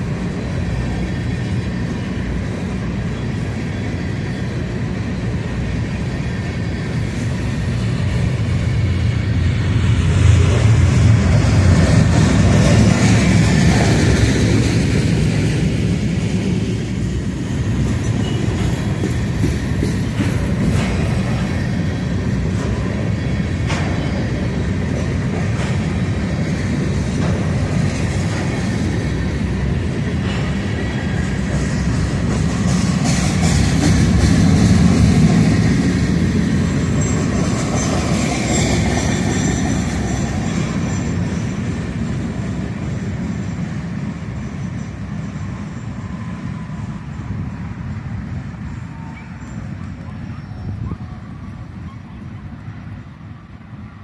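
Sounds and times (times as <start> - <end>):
freight train rumbling past: 0.0 - 54.0
wheels clicking over rail joints: 10.5 - 42.2
high wheel squeal: 17.0 - 20.1, 36.7 - 42.0.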